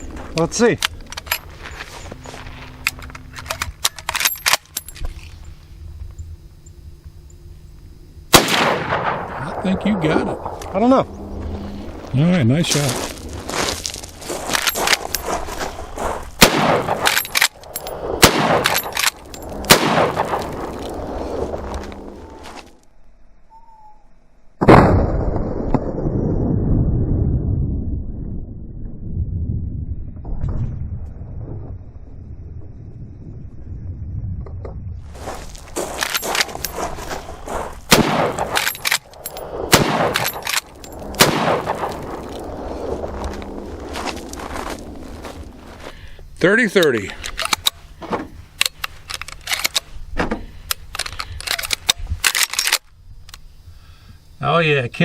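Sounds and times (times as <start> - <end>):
rifle action clicks and knocks: 0.3 - 1.5, 2.8 - 5.3, 16.8 - 18.0, 18.6 - 19.5, 38.3 - 42.0, 46.8 - 53.4
rifle shots with echo: 8.3 - 10.6, 16.4 - 20.6, 37.9 - 39.0, 39.7 - 42.3.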